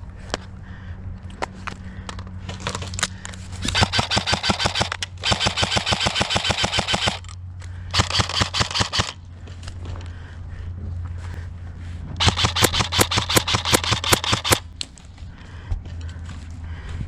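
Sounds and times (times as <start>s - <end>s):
airsoft gun firing bursts: 3.6s - 7.3s, 7.9s - 9.2s, 12.2s - 14.8s.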